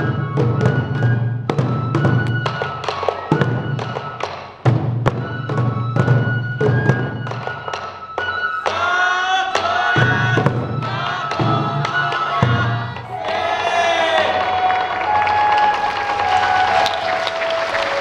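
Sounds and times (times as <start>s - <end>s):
bamboo flute melody: 0.0s - 18.0s
taiko drums beating: 0.0s - 18.0s
voices singing: 8.5s - 18.0s.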